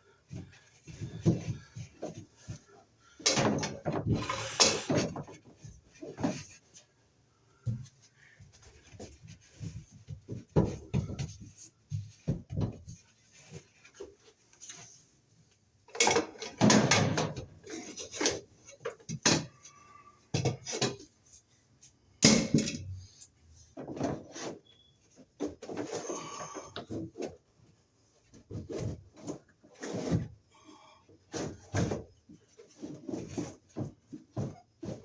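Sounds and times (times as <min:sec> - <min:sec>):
cable scraping inside a wall: 0:04.0 - 0:05.2, 0:28.4 - 0:30.4.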